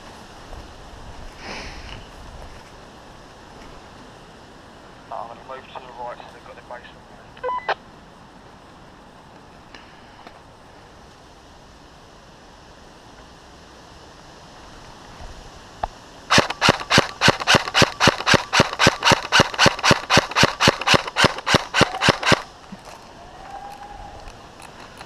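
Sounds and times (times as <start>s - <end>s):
airsoft gun shots: 16.3s - 22.5s.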